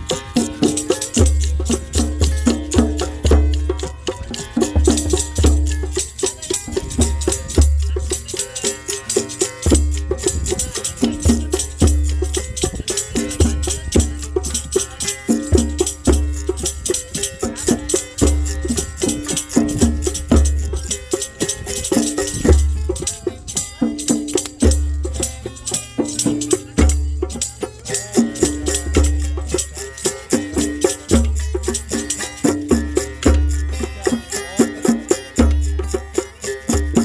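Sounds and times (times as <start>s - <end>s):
jingling hand percussion: 0.0s - 37.0s.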